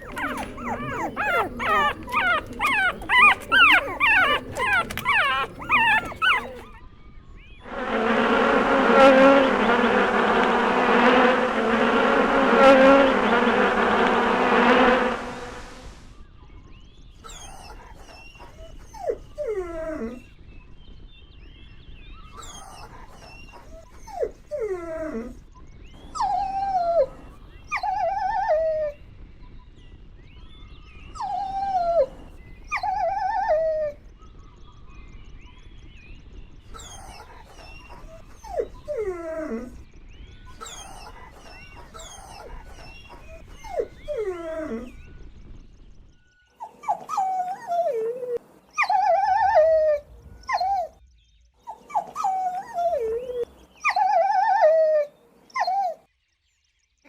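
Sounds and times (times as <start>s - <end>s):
puppies whining and whimpering: 0.0s - 6.8s, 17.3s - 20.2s, 22.4s - 25.4s, 26.1s - 29.0s, 31.2s - 34.0s, 36.8s - 39.8s, 40.6s - 45.0s, 46.6s - 51.0s, 51.7s - 56.0s.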